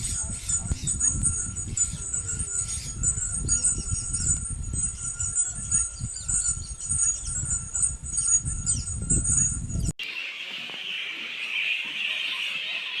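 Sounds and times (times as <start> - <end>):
bats chirping squeaks: 0.0 - 13.0.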